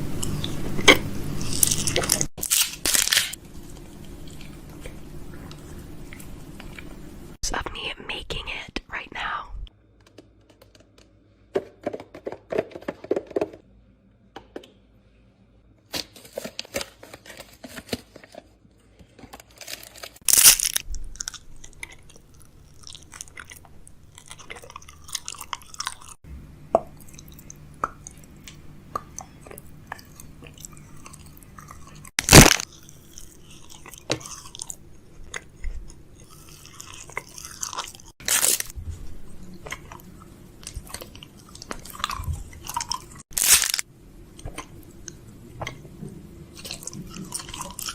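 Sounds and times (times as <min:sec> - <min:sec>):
low steady hum: 0:00.0 - 0:09.8, 0:20.2 - 0:47.9
crunching and clicking handling noises: 0:00.2 - 0:06.9, 0:15.9 - 0:26.2, 0:27.1 - 0:38.8, 0:39.6 - 0:45.8.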